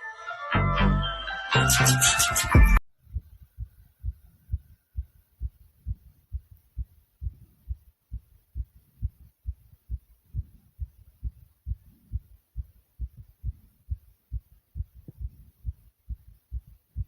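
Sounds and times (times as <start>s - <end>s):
heartbeat thumps: 2.5s - 17.0s.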